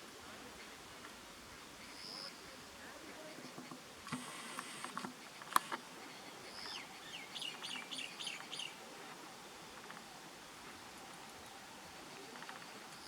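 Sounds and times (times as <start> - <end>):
faint clicks: 3.4 - 5.9, 9.7 - 10.1, 11.0 - 13.0.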